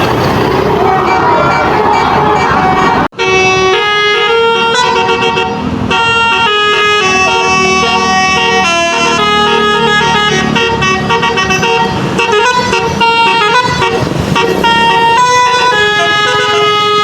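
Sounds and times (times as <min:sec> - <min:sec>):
multi-tone bus horn tune: 0:00.7 - 0:17.0.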